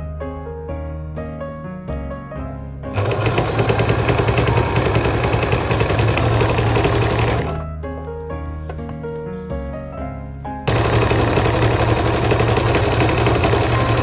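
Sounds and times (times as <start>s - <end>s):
sewing machine stitching: 3.0s - 7.6s, 10.7s - 14.0s.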